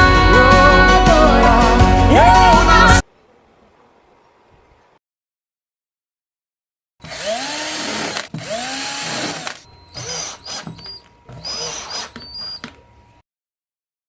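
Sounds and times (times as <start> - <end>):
power drill driving screws: 7.0 - 12.8.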